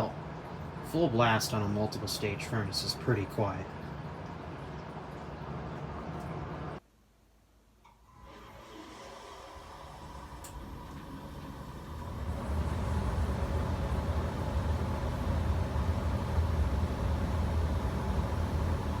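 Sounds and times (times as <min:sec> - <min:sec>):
furnace blower rushing air: 0:08.2 - 0:19.0.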